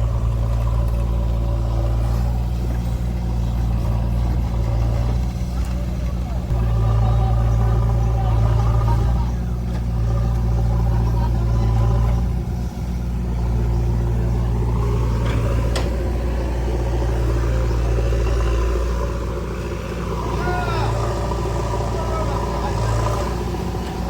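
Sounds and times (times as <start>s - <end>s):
heavy diesel engine running: 0.0s - 24.0s.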